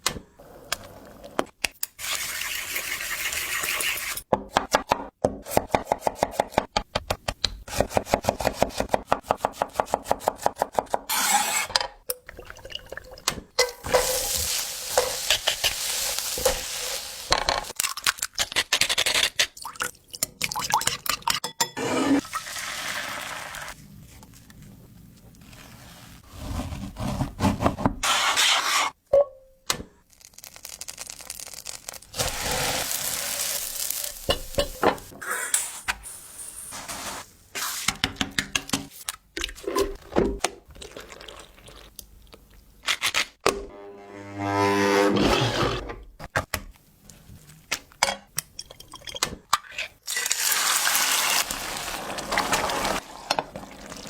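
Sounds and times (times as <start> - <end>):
liquid sizzling: 12.8 - 17.8, 22.2 - 23.8, 30.2 - 35.1, 50.1 - 54.0.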